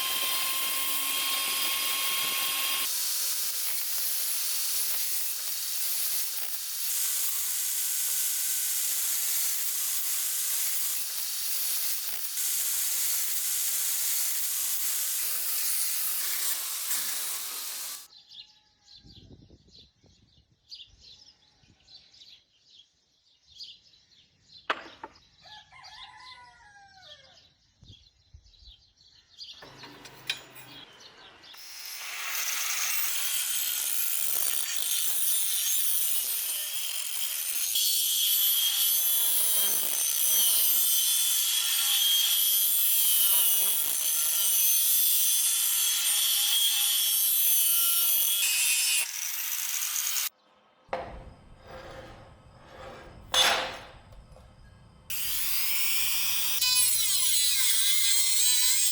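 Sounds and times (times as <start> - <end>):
power tool grinding metal: 0.0 - 18.1, 29.6 - 50.3, 51.0 - 54.3, 55.1 - 58.9.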